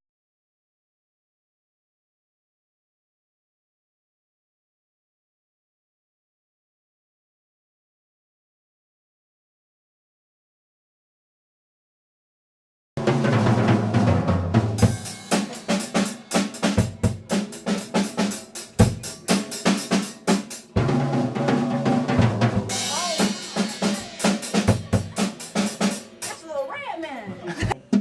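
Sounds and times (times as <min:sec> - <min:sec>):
held low drum tones: 0:13.0 - 0:26.4
drums played in a busy rhythm: 0:13.0 - 0:26.6, 0:27.3 - 0:28.0.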